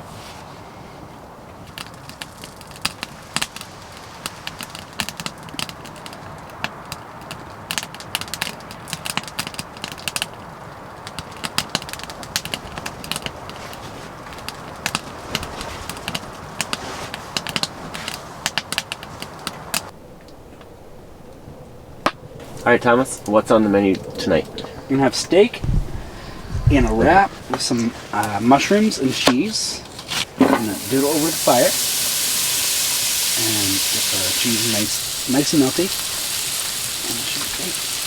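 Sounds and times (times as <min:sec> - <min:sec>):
wood fire crackling: 0:00.0 - 0:38.0
fire hiss: 0:22.4 - 0:38.0.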